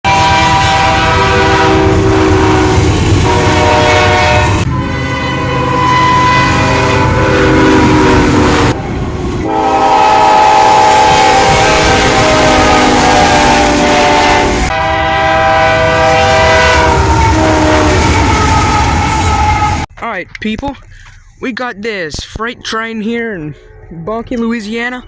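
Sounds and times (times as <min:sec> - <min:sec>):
locomotive air horn blowing: 0:00.0 - 0:08.8, 0:09.4 - 0:19.9
freight train rumble: 0:00.0 - 0:25.0.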